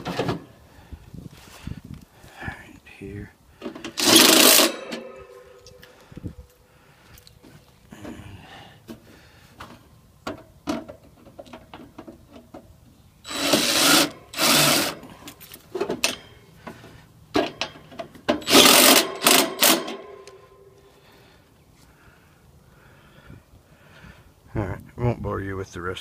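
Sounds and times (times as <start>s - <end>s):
cordless drill driving screws: 3.9s - 5.2s, 13.3s - 15.1s, 18.4s - 20.1s
metal clicks and knocks: 15.4s - 20.4s.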